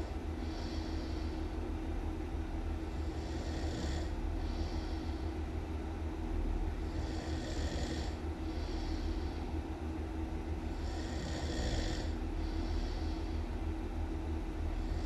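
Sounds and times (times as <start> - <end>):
steady low hum: 0.0 - 15.0
person snoring loudly: 3.2 - 4.1, 6.9 - 8.2, 10.8 - 12.2.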